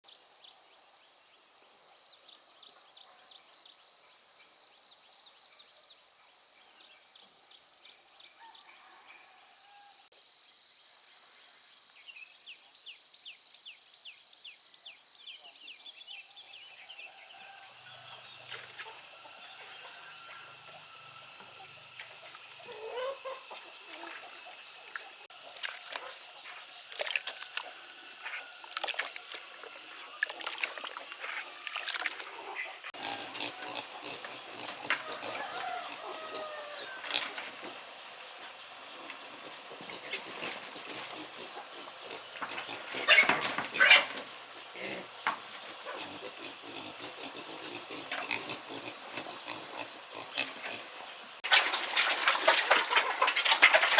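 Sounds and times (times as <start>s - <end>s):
poultry calling: 17.1s - 37.4s, 39.9s - 45.1s.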